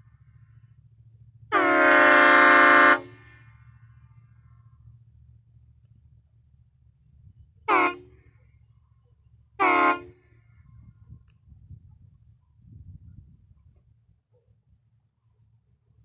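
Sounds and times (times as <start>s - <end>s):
train air horn blasts: 1.5s - 3.7s, 7.7s - 8.4s, 9.6s - 10.4s.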